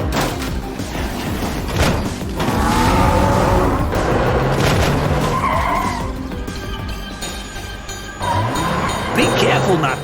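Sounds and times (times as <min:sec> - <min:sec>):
background music: 0:00.0 - 0:10.0
cartoon tyres skidding: 0:00.9 - 0:06.3, 0:08.2 - 0:10.0.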